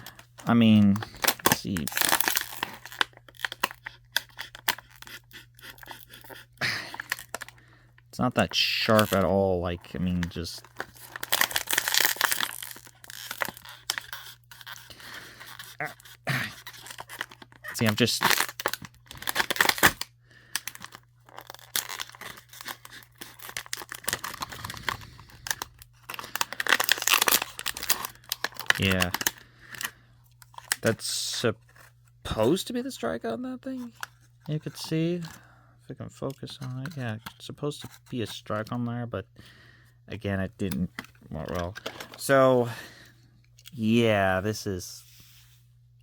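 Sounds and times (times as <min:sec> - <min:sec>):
knife sawing and tearing material: 0:04.3 - 0:06.6.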